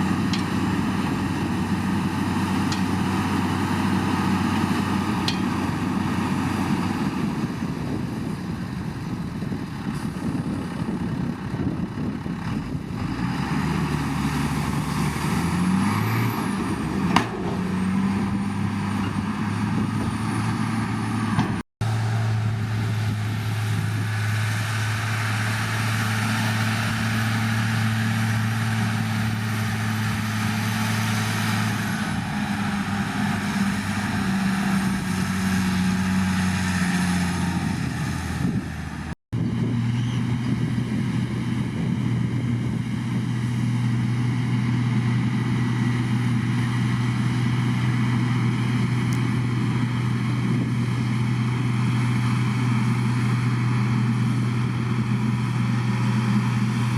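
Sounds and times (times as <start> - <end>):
heavy diesel engine running: 0.0 - 56.9.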